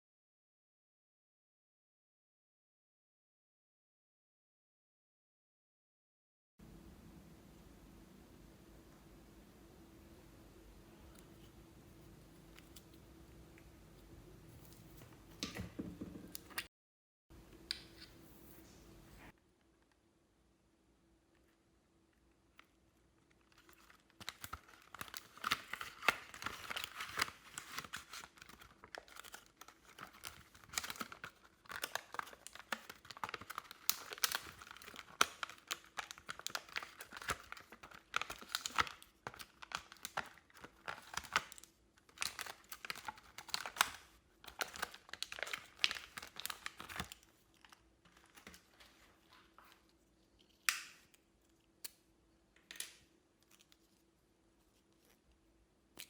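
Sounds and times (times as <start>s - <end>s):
slime crackling and popping: 23.4s - 47.3s.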